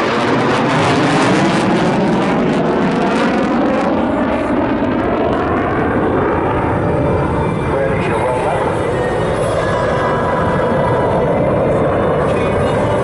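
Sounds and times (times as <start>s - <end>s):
aircraft engines flying past: 0.0s - 13.0s.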